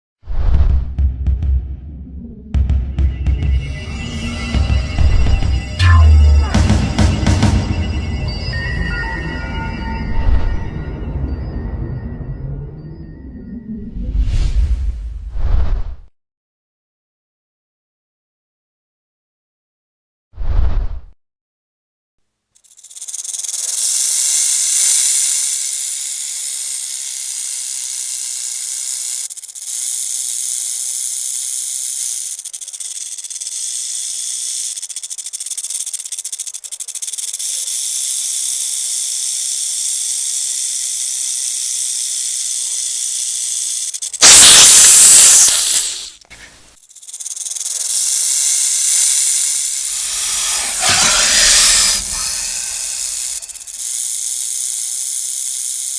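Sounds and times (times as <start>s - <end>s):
rattlesnake rattling: 22.6s - 55.9s.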